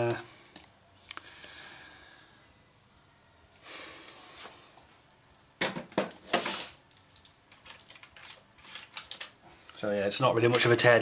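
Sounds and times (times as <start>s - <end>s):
small hard objects clattering: 5.7s - 9.3s.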